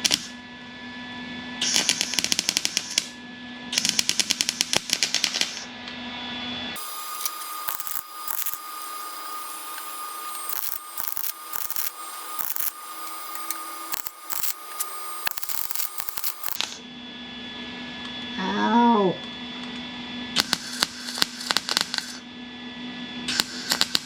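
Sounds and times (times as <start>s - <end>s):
welding arc crackling and popping: 0.0s - 0.3s, 1.6s - 3.1s, 3.8s - 5.7s, 6.8s - 16.8s, 20.4s - 22.2s, 23.3s - 24.0s.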